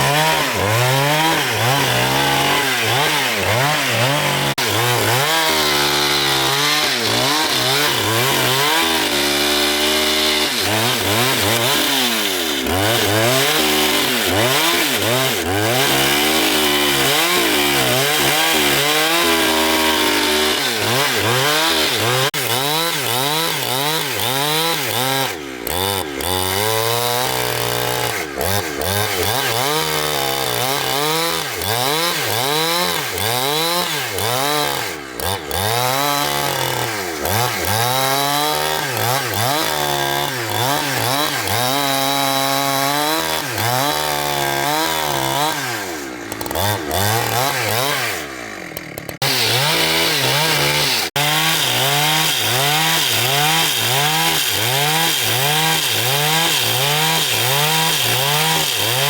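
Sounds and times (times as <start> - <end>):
engine-driven saw cutting log: 0.0 - 59.0.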